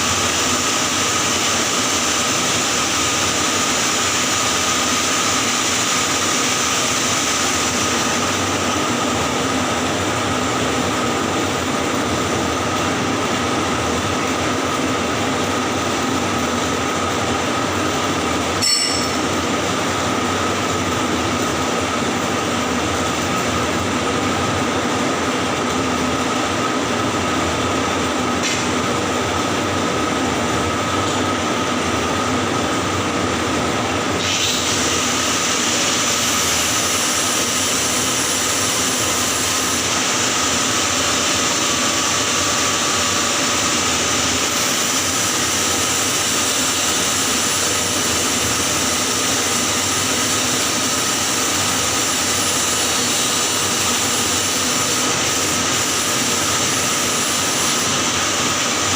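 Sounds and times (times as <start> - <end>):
welding arc crackling hiss: 34.2 - 58.8.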